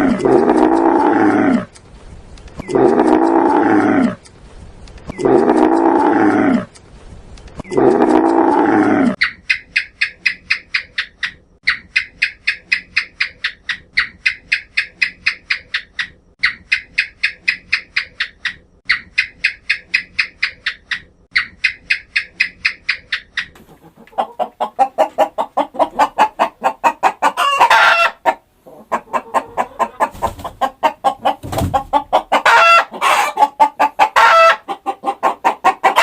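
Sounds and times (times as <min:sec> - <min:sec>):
deep animal calls: 0:02.6 - 0:04.2.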